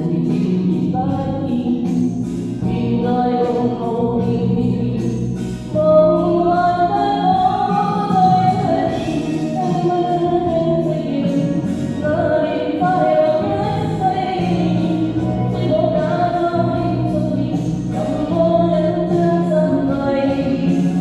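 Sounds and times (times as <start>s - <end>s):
karaoke backing track: 0.0s - 21.0s
person singing with echo: 0.0s - 21.0s.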